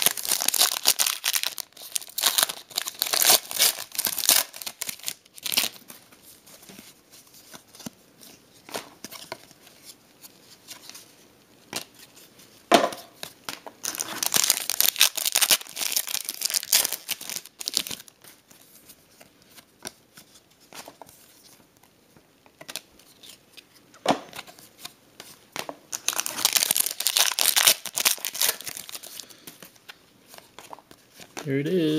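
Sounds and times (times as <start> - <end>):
wrapper tearing: 0.0 - 5.8, 13.8 - 18.1, 25.9 - 29.2
wrappers crinkling: 0.0 - 5.9, 13.8 - 18.2, 25.9 - 29.4.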